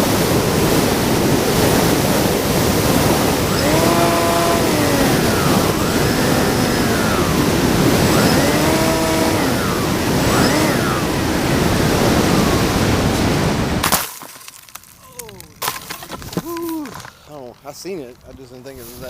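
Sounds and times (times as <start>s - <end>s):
electric motor propeller whine: 0.0s - 13.8s
wind rush: 0.0s - 13.8s.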